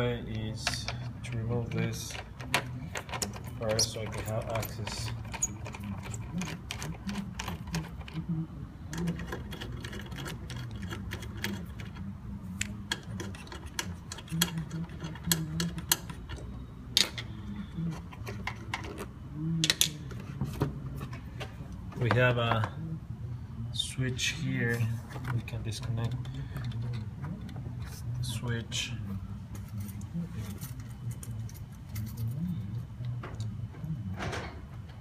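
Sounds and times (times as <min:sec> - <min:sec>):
parts being handled clicking: 0:00.3 - 0:08.3, 0:08.9 - 0:22.8, 0:25.1 - 0:28.1.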